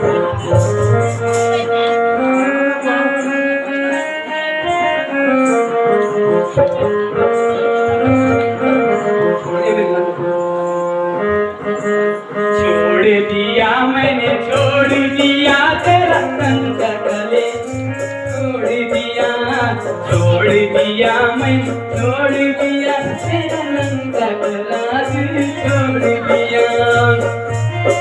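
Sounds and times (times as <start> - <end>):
music with a steady beat: 0.0 - 28.0
fast shaking rhythm: 11.7 - 28.0.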